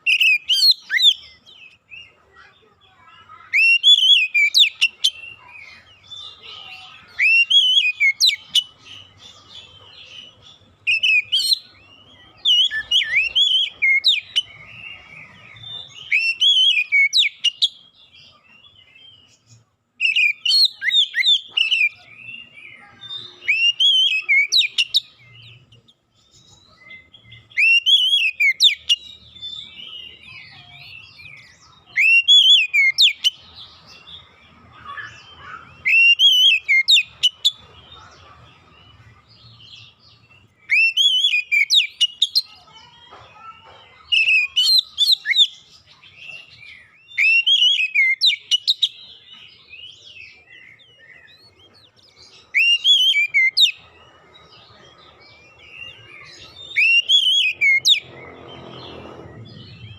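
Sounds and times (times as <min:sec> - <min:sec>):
songbird whistled phrases: 0:00.0 - 0:01.8, 0:03.0 - 0:09.1, 0:10.8 - 0:17.8, 0:20.0 - 0:25.8, 0:26.7 - 0:33.4, 0:34.7 - 0:37.6, 0:40.4 - 0:42.9, 0:44.0 - 0:49.4, 0:50.0 - 0:53.8, 0:55.6 - 0:58.1.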